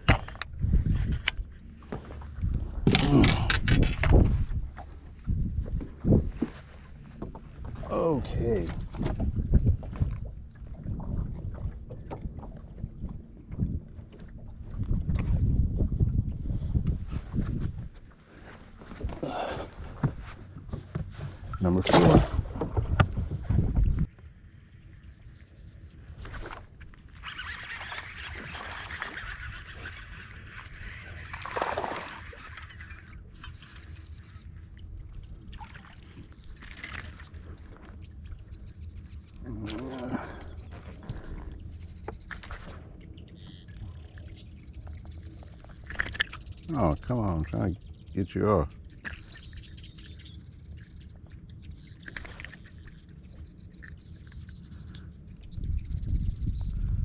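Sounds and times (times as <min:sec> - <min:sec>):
water sloshing and trickling: 0:00.0 - 0:57.0
water splash: 0:21.8 - 0:22.6, 0:31.3 - 0:32.8
faint bird chirps: 0:32.4 - 0:57.0.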